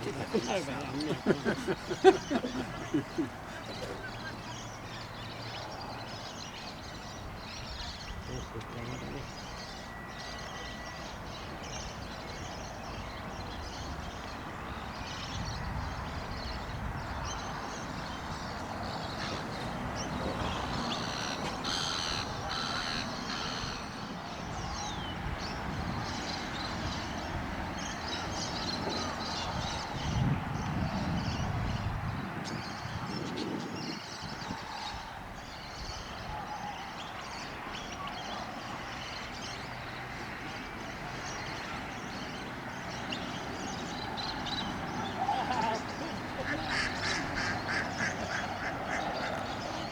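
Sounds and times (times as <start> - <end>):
small birds chirping: 0.0 - 49.9
crow cawing: 20.3 - 24.1.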